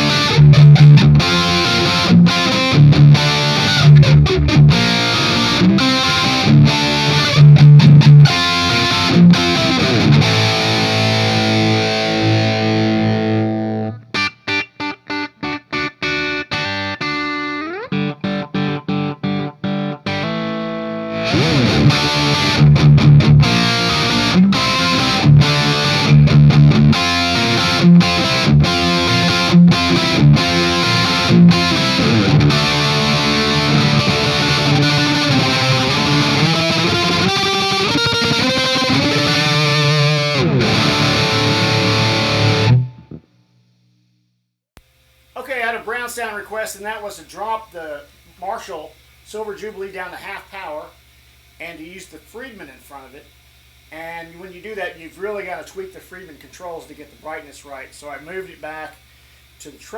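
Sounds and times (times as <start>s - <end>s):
distorted electric guitar: 0.0s - 43.8s.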